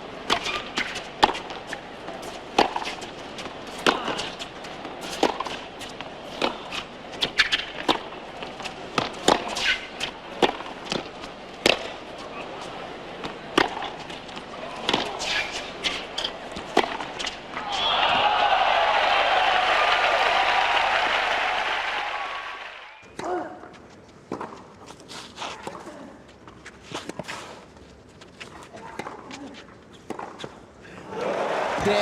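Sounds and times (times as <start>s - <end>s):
rackets striking tennis ball: 0.0s - 19.1s
tennis ball bouncing: 0.2s - 18.2s
shoe squeaks: 0.4s - 1.1s.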